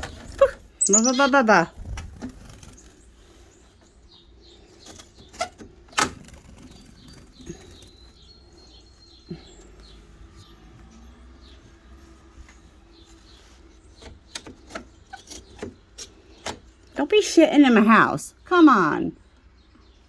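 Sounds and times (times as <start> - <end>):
bird wings fluttering: 1.7 - 3.2, 6.0 - 8.2.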